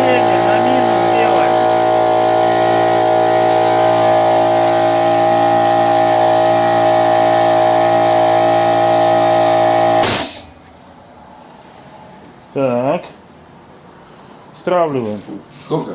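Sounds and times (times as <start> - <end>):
compressor stopping burst: 0.0 - 10.6
air compressor running: 0.0 - 10.7.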